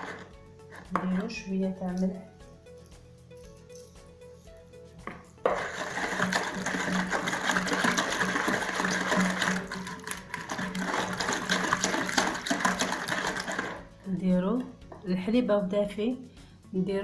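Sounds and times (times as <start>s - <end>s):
electric hand mixer running: 5.5s - 13.9s.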